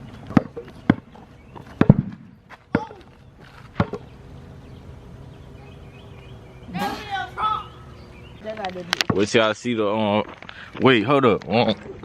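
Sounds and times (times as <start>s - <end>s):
basketball bouncing on hard ground: 0.0s - 4.1s, 8.7s - 9.4s.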